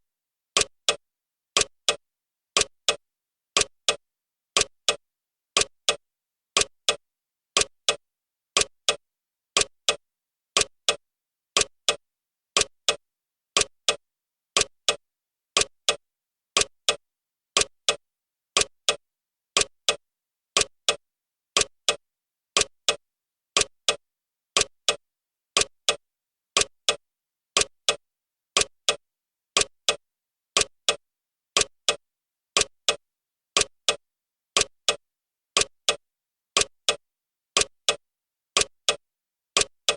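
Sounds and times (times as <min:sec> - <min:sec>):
clock ticking: 0:00.6 - 0:01.0, 0:01.6 - 0:02.0, 0:02.6 - 0:03.0, 0:03.6 - 0:04.0, 0:04.6 - 0:05.0, 0:05.6 - 0:06.0, 0:06.6 - 0:07.0, 0:07.6 - 0:08.0, 0:08.6 - 0:09.0, 0:09.6 - 0:10.0, 0:10.6 - 0:11.0, 0:11.6 - 0:12.0, 0:12.6 - 0:13.0, 0:13.6 - 0:14.0, 0:14.6 - 0:15.0, 0:15.6 - 0:16.0, 0:16.6 - 0:17.0, 0:17.6 - 0:18.0, 0:18.6 - 0:19.0, 0:19.6 - 0:20.0, 0:20.6 - 0:21.0, 0:21.6 - 0:22.0, 0:22.6 - 0:23.0, 0:23.6 - 0:24.0, 0:24.6 - 0:25.0, 0:25.6 - 0:26.0, 0:26.6 - 0:27.0, 0:27.6 - 0:28.0, 0:28.6 - 0:29.0, 0:29.6 - 0:30.0, 0:30.6 - 0:31.0, 0:31.6 - 0:32.0, 0:32.6 - 0:33.0, 0:33.6 - 0:34.0, 0:34.6 - 0:35.0, 0:35.6 - 0:36.0, 0:36.6 - 0:37.0, 0:37.6 - 0:38.0, 0:38.6 - 0:39.0, 0:39.6 - 0:39.9.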